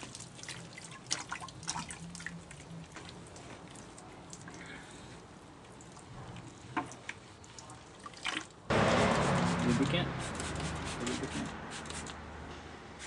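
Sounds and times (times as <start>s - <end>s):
liquid dripping and splashing: 0.0s - 8.7s.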